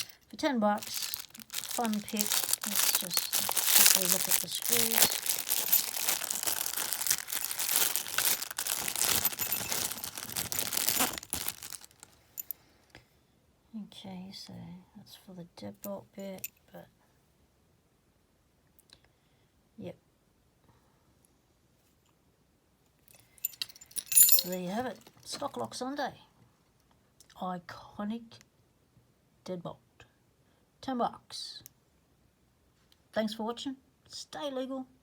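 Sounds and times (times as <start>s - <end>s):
plastic packaging crinkling: 0.7s - 12.5s, 23.8s - 25.2s.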